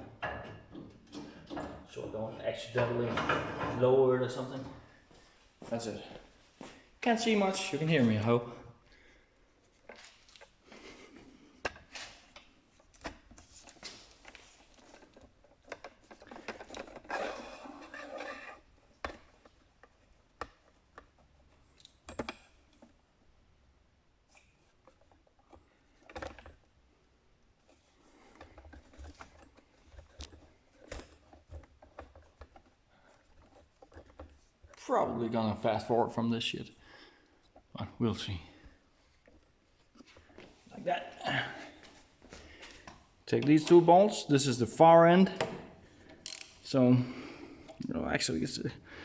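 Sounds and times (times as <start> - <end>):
rubbing and scraping: 13.4 - 19.0.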